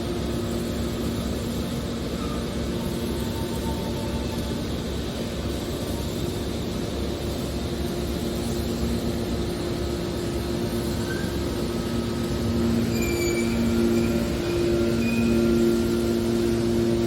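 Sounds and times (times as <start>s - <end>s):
hydraulic machine rumble: 9.1s - 17.0s.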